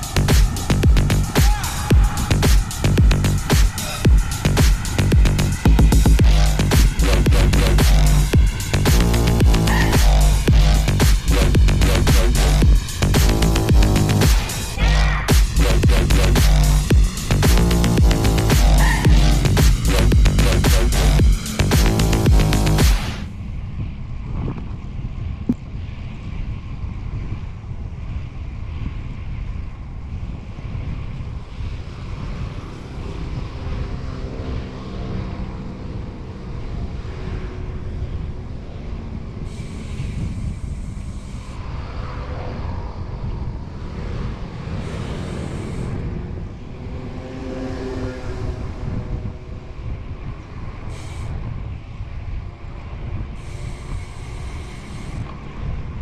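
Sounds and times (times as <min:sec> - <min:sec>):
held hum or tone: 0:00.0 - 0:23.4
traffic: 0:00.0 - 0:56.0
wind buffeting microphone: 0:23.0 - 0:56.0.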